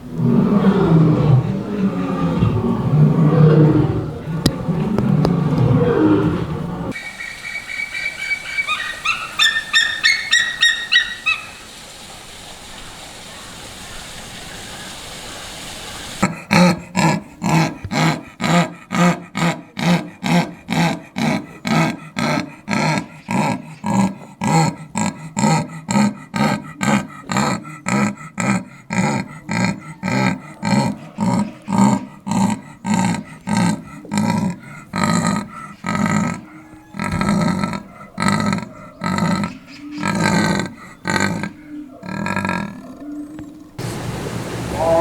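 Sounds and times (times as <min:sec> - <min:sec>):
big cat rhythmic grunting calls: 0:00.0 - 0:07.0, 0:16.0 - 0:45.0.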